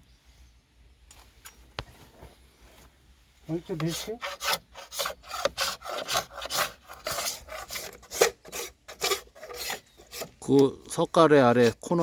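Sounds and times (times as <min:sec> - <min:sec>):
knife scraping wood: 0:03.7 - 0:10.5.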